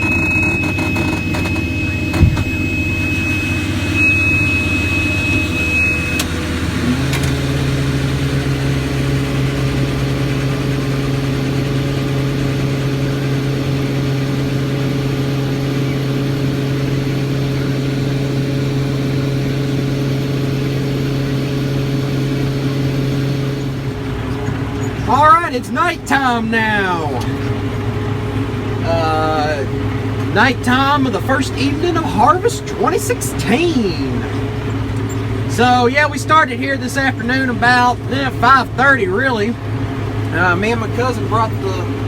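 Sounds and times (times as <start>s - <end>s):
high steady beep: 0.0s - 6.7s, 28.8s - 34.5s
tractor engine running: 0.0s - 42.0s.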